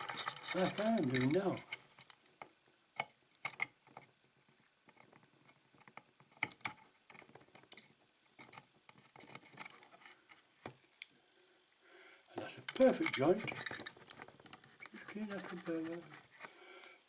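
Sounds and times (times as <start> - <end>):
soldering iron scraping on rail: 12.7 - 16.5.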